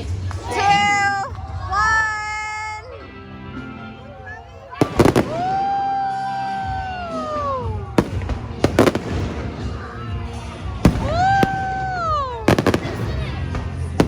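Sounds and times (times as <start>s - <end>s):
firework bangs: 4.8s - 14.0s.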